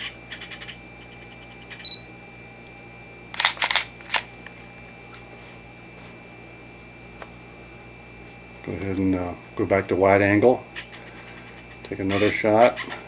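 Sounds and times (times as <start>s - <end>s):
camera focus beep: 1.8s - 2.1s
camera shutter clacks: 3.4s - 4.3s
light camera clicks: 3.4s - 4.3s.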